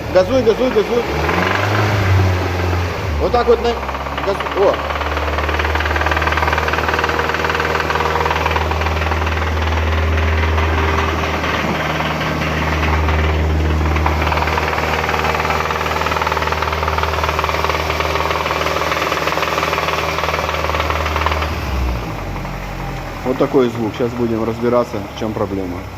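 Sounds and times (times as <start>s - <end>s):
man talking: 0.0s - 1.2s, 3.2s - 4.8s, 23.2s - 25.9s
knocking car engine revving: 0.0s - 25.9s.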